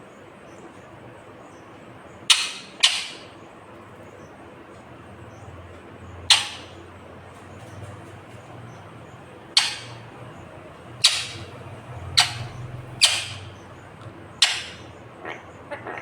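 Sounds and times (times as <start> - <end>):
parakeet squawking: 2.3 - 3.4, 6.2 - 6.9, 7.6 - 16.0.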